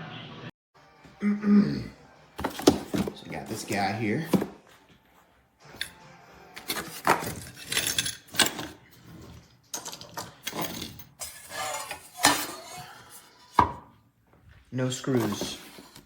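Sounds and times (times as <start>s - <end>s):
metal parts clinking: 6.6s - 12.7s.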